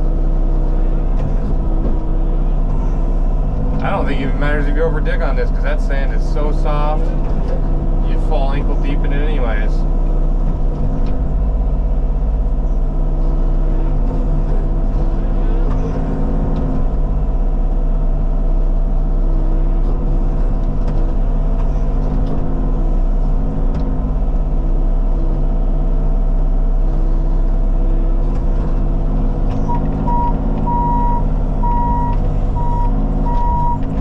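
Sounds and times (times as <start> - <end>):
diesel engine running: 0.0 - 34.0
backup alarm beeping: 29.6 - 33.9.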